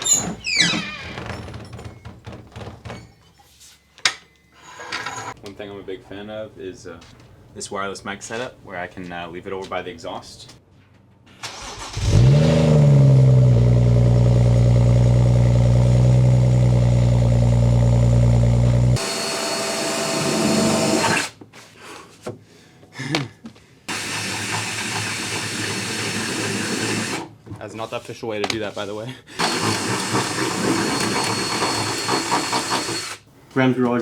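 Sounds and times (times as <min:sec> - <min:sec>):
car engine starting and idling: 0:11.4 - 0:19.0.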